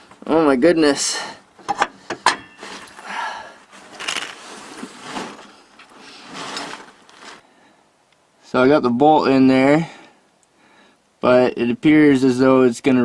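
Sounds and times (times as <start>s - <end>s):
metallic clicks and knocks: 1.6s - 2.6s
scraping and rustling: 1.6s - 3.0s, 3.7s - 7.4s.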